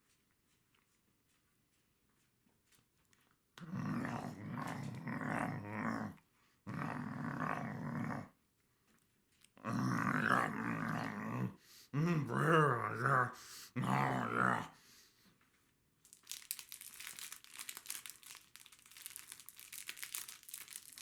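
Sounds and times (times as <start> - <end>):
dog growling low: 3.6 - 8.4, 9.6 - 14.8.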